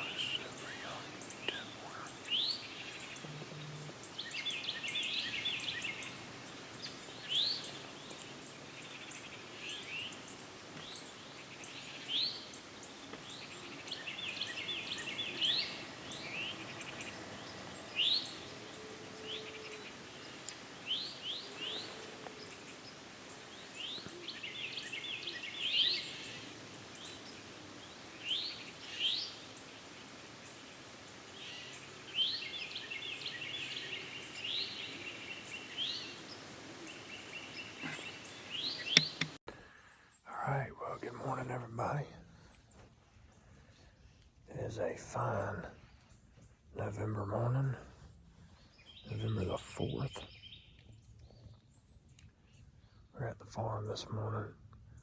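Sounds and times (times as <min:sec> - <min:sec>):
faint outdoor hiss: 0:00.0 - 0:55.0
songbirds singing: 0:00.0 - 0:55.0.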